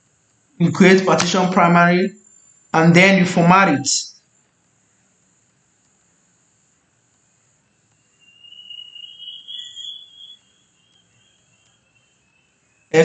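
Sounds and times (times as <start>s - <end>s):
high-pitched cricket-like trill: 0.0s - 2.8s, 7.2s - 13.0s.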